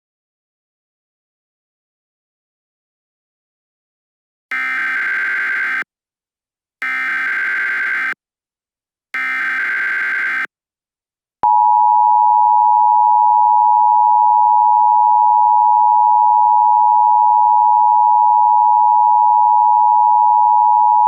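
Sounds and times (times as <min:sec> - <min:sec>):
alert data bursts: 0:04.5 - 0:05.8, 0:06.8 - 0:08.2, 0:09.2 - 0:10.5.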